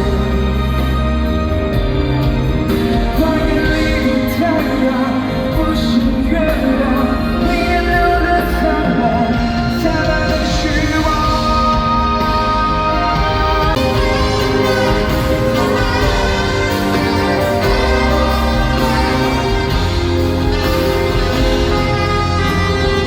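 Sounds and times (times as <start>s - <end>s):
live pop-rock band: 0.0s - 23.0s
man singing: 2.7s - 23.0s.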